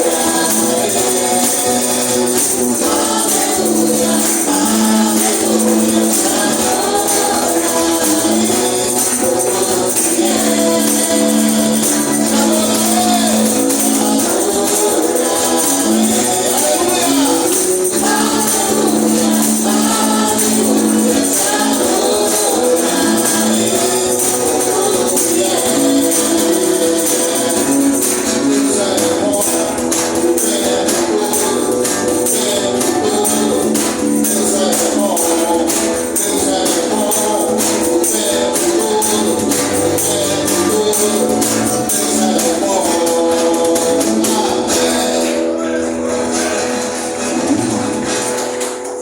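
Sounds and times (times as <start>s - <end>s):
live band playing upbeat song: 0.0s - 49.0s
tambourine shaking: 0.0s - 49.0s
voices singing along: 0.0s - 49.0s.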